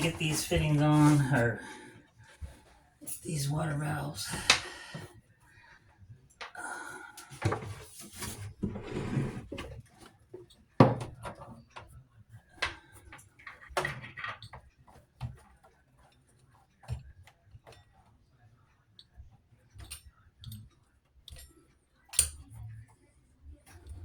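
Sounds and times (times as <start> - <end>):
rustling: 0.0 - 2.8.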